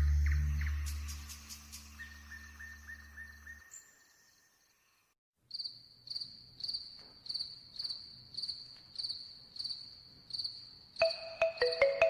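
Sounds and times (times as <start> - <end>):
soft ambient music with drone: 0.0 - 3.6
cricket chirping: 0.3 - 12.0.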